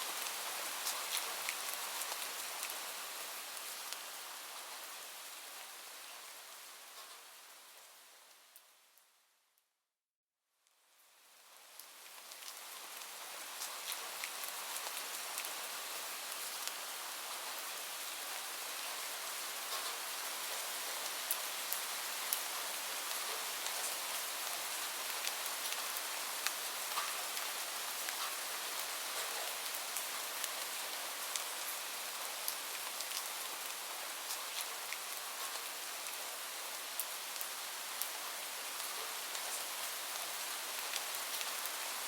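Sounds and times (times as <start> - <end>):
steady rain hiss: 0.0 - 9.4, 10.6 - 42.0.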